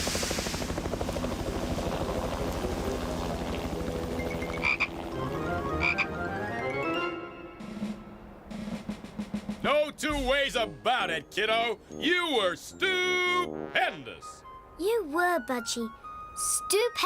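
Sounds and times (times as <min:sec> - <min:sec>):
music cue with climbing notes: 0:05.1 - 0:16.4
cartoon frog croaks: 0:05.8 - 0:06.1.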